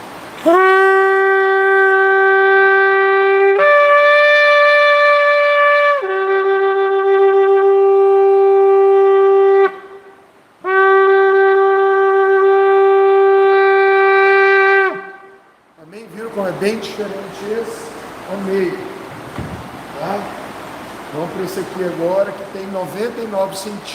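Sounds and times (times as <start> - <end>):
shofar blowing: 0.4 - 15.6.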